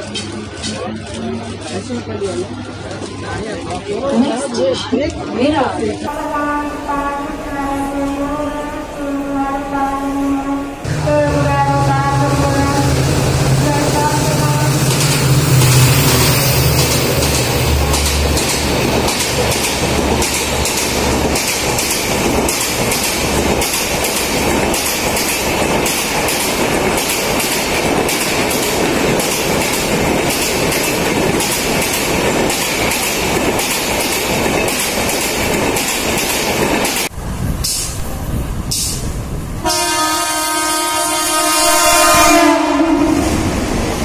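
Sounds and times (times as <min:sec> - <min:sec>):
train rumbling at speed: 0:00.0 - 0:04.0, 0:05.4 - 0:44.0
train wheels clacking over rail joints: 0:14.7 - 0:38.0.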